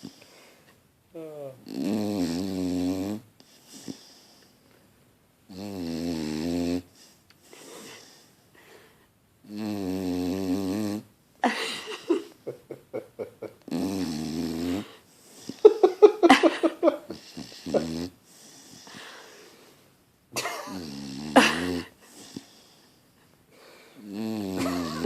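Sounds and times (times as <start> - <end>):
dog snoring loudly: 1.6 - 3.9, 5.5 - 6.9, 9.4 - 11.1, 13.7 - 15.0, 17.1 - 18.2, 20.6 - 22.4, 24.0 - 25.0.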